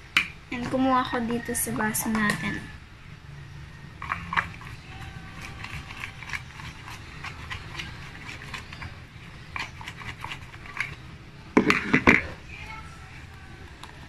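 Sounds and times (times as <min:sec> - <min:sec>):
slime squelching: 0:04.0 - 0:14.0.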